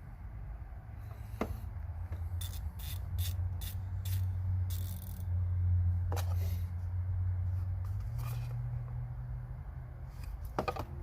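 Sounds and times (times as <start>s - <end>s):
ratchet rasping clicks: 2.4s - 5.3s.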